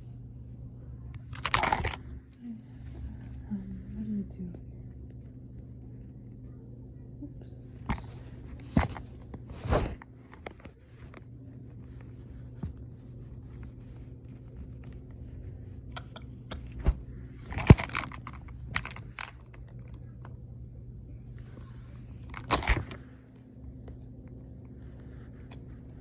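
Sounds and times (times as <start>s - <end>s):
steady low hum: 0.0s - 26.0s
handling knocks and rustles: 1.2s - 2.0s, 7.9s - 11.3s, 16.8s - 20.2s, 22.2s - 23.1s.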